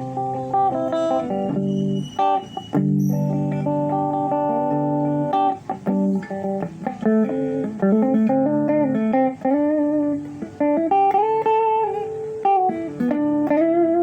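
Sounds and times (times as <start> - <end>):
clean electric guitar playing: 0.0 - 14.0.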